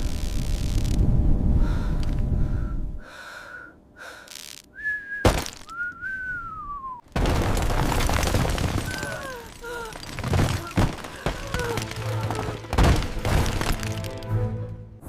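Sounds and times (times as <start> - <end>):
sharp crack: 0.0 - 1.0, 4.2 - 6.2, 7.1 - 14.3
loud wind rumble: 0.0 - 3.1
thin whistling tones: 4.7 - 7.0
falling whistle: 4.8 - 7.0.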